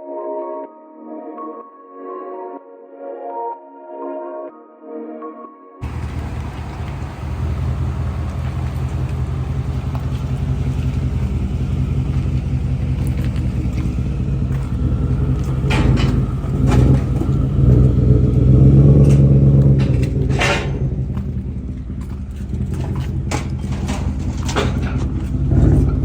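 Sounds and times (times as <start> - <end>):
car engine running: 5.8 - 26.0
sharp exhaust cracks: 5.8 - 26.0.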